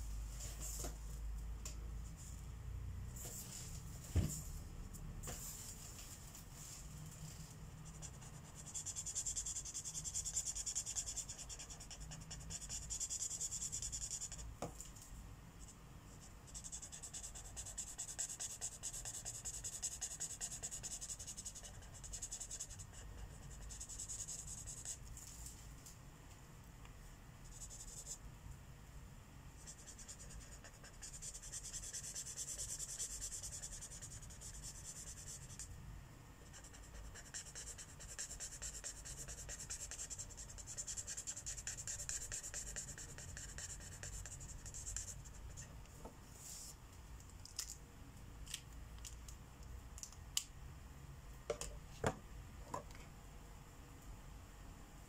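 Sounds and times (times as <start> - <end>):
marker scratching on paper: 7.8 - 14.5, 16.2 - 25.0, 29.6 - 35.7, 36.4 - 45.7.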